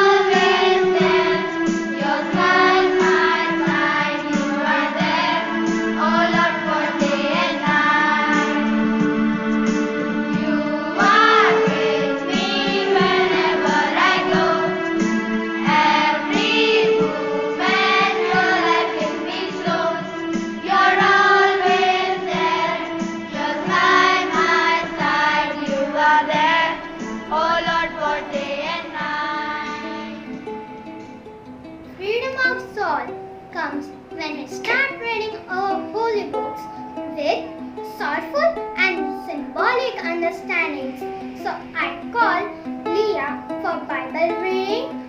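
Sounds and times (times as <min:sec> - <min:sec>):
children singing: 0:00.0 - 0:31.2
instrumental accompaniment: 0:00.0 - 0:45.0.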